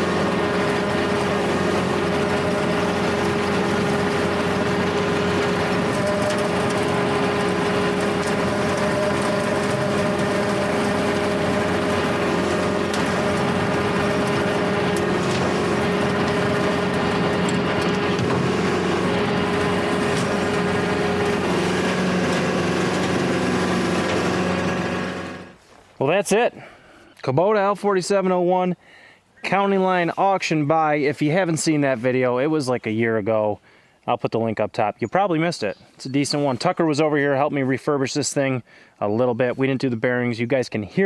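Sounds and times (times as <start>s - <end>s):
cutter bearings noise: 0.0s - 25.6s
tractor mechanical drone: 0.0s - 25.6s.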